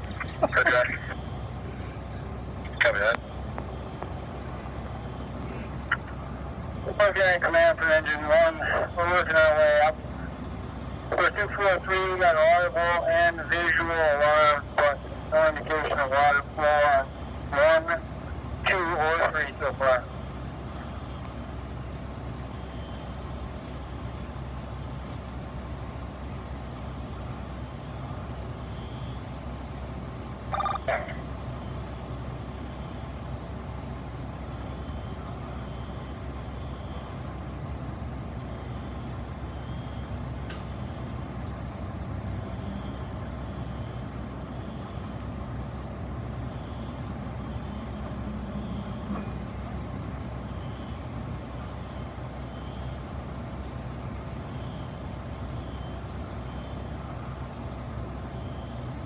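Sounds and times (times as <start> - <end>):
engine idling: 0.0 - 59.0
faint high beep: 46.5 - 49.4.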